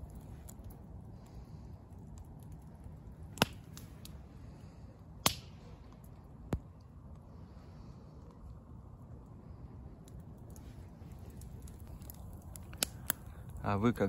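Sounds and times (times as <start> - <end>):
fire sharp pops: 0.0 - 6.9, 10.0 - 14.0
campfire crackling: 0.0 - 14.0
low steady rumble: 0.0 - 14.0.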